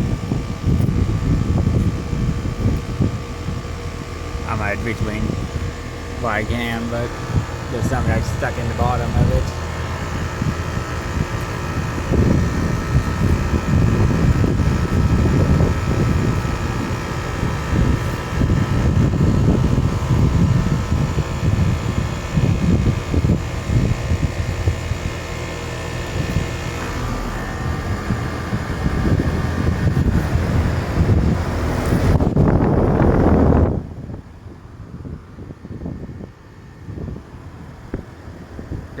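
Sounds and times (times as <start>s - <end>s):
heat pump humming: 0.0s - 39.0s
wind buffeting microphone: 0.0s - 39.0s.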